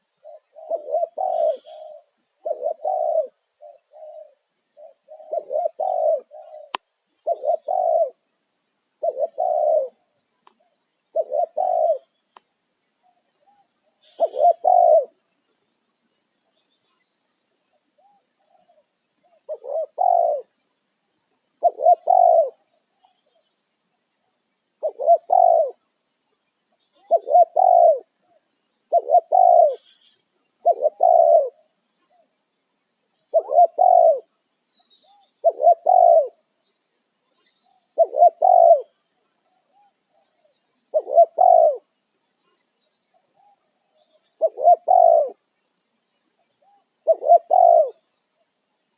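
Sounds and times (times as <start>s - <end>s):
dove cooing: 0.0s - 8.2s, 9.0s - 10.0s, 11.1s - 12.2s, 13.4s - 15.2s, 18.0s - 20.6s, 21.6s - 22.7s, 24.8s - 25.8s, 27.0s - 28.1s, 28.8s - 30.0s, 30.6s - 31.7s, 33.3s - 34.3s, 35.0s - 36.4s, 37.9s - 39.0s, 40.9s - 41.9s, 44.4s - 45.4s, 46.6s - 48.0s.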